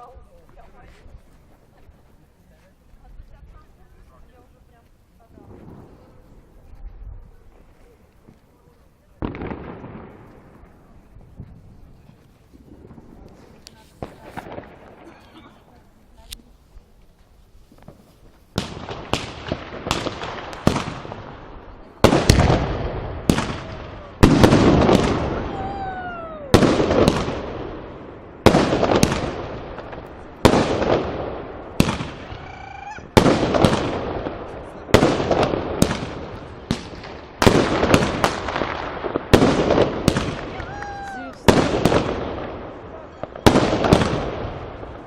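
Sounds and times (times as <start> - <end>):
fireworks crackling: 0.0 - 45.0
fireworks bangs with echo: 9.1 - 11.6, 12.6 - 15.2, 17.8 - 32.5, 33.1 - 45.0.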